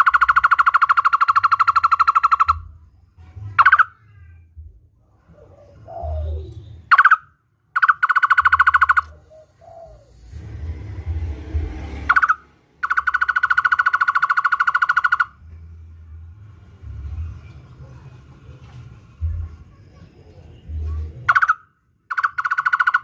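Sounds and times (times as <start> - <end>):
bird singing a rapid trill: 0.0 - 3.0, 3.6 - 4.0, 6.3 - 10.0, 12.1 - 15.5, 20.0 - 23.0.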